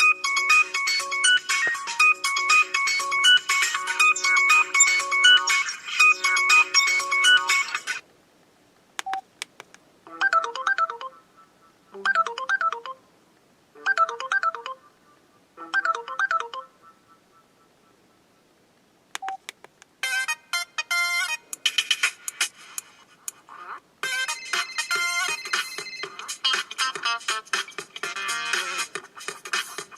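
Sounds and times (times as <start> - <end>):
electronic ringtone melody: 0.0 - 8.0, 10.1 - 13.0, 13.8 - 14.9, 15.6 - 17.0, 24.0 - 26.6.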